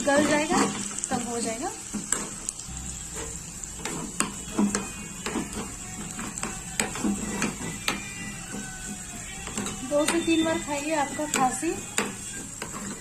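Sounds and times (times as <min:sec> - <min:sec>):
spoon stirring and scraping pan: 0:00.0 - 0:13.0
spoon knocking against pan: 0:03.2 - 0:13.0.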